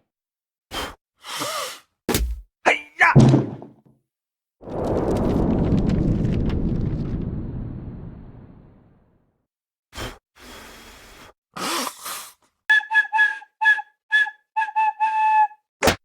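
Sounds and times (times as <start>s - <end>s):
short blown toots: 12.7s - 15.6s.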